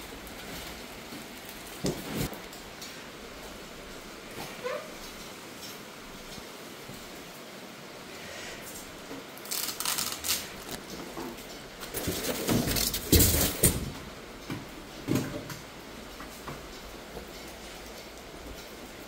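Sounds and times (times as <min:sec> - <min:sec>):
clattering knocks and rattles: 0:10.8 - 0:18.7.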